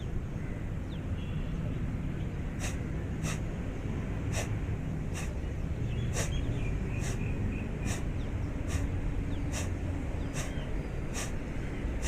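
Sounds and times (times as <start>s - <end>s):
sharp breaths through the nose: 2.5s - 3.6s, 4.2s - 12.0s.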